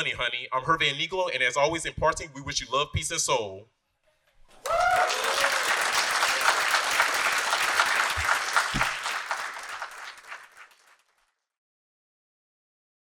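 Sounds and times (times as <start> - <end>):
audience applauding: 4.6 - 11.3.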